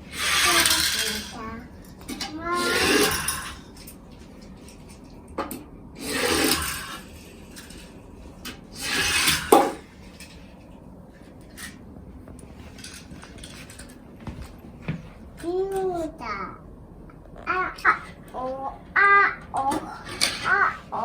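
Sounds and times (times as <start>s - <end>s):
toy cars scraping plastic packaging: 0.0s - 4.9s, 6.0s - 10.5s, 19.8s - 21.0s.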